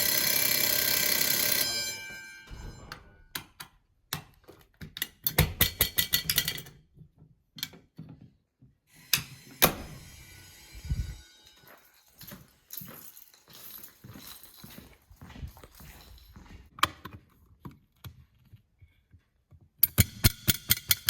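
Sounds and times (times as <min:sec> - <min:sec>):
fire alarm bell ringing: 0:00.0 - 0:03.6, 0:09.0 - 0:12.9
heavy thumps: 0:02.4 - 0:03.4.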